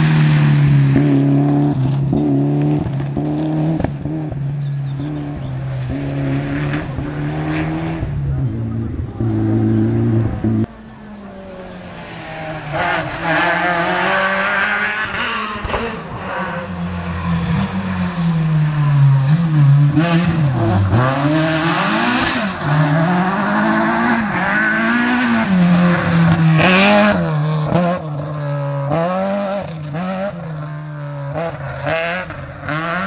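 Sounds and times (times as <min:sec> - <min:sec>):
rally car engine revving: 0:00.0 - 0:33.0.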